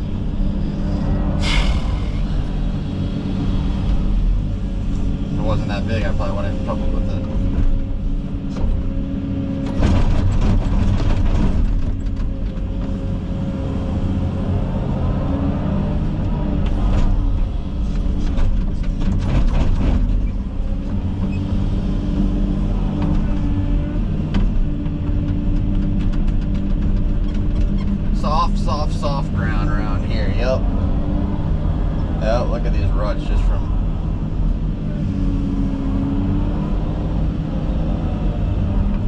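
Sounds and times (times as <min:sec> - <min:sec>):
excavator diesel engine running: 0:00.0 - 0:15.6.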